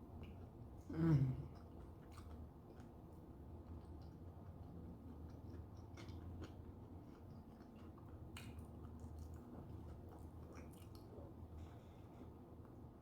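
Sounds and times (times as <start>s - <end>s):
person chewing close to microphone: 1.5s - 11.8s.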